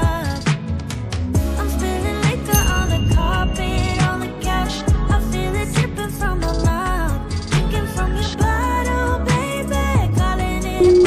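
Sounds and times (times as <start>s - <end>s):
r and b pop music: 0.0s - 11.0s.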